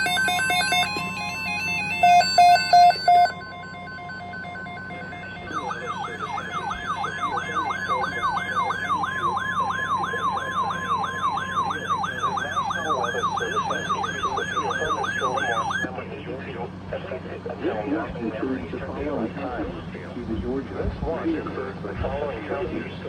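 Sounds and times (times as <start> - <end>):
short electronic beeps: 0.0 - 15.8
fast siren-like warble: 0.0 - 15.9
steady warning alarm tone: 0.0 - 15.9.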